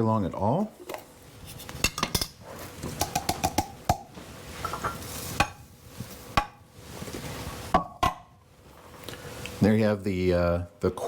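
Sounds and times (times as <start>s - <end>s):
kitchen containers knocking and clinking: 1.8s - 5.6s.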